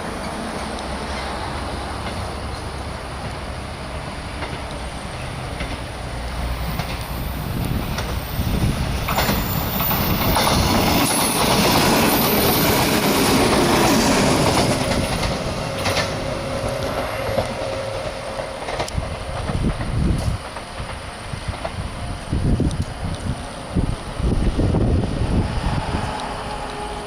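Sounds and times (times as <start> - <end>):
electric train passing: 0.0 - 27.0
wheels clicking over rail joints: 4.3 - 6.0, 6.6 - 23.6.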